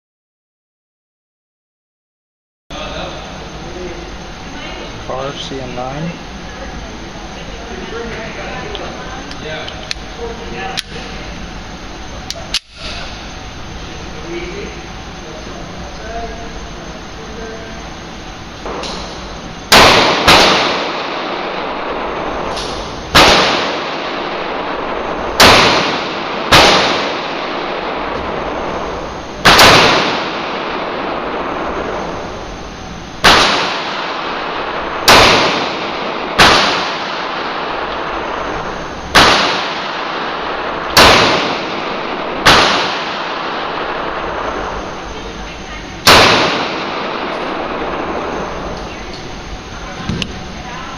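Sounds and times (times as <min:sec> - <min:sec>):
pistol shots with echo: 0:18.6 - 0:28.5, 0:29.4 - 0:32.2, 0:33.2 - 0:38.3, 0:39.1 - 0:44.8, 0:46.0 - 0:48.7.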